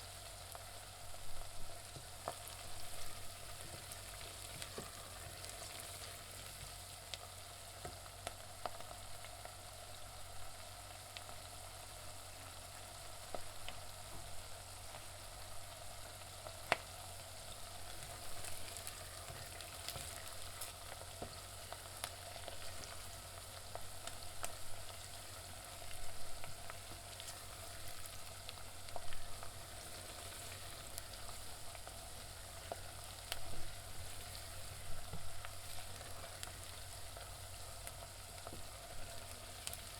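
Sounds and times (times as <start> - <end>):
onions sizzling in a pan: 0.0 - 39.9
small pops and crackles: 1.9 - 9.4, 16.4 - 39.9.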